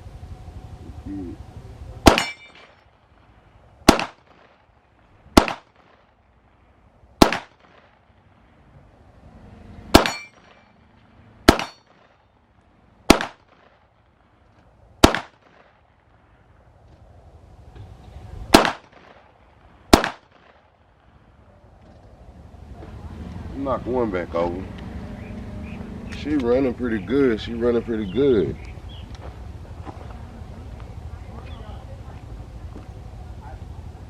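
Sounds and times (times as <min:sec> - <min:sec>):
struck steel target ringing: 0:02.0 - 0:02.7, 0:09.9 - 0:10.8, 0:11.5 - 0:11.9
pistol shots: 0:02.0 - 0:02.8, 0:03.8 - 0:04.6, 0:05.4 - 0:06.1, 0:07.2 - 0:08.0, 0:09.9 - 0:10.7, 0:11.4 - 0:12.2, 0:13.1 - 0:13.9, 0:15.0 - 0:15.8, 0:18.5 - 0:20.7.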